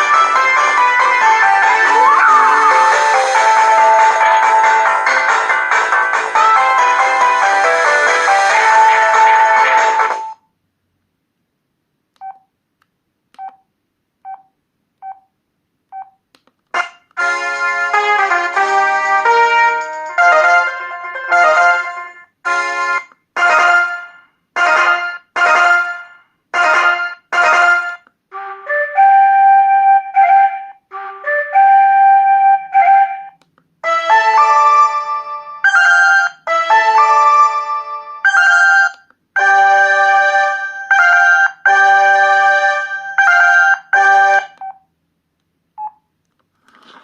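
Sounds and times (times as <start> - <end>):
piano-like phone ringtone: 1.0 - 5.2, 33.9 - 44.8.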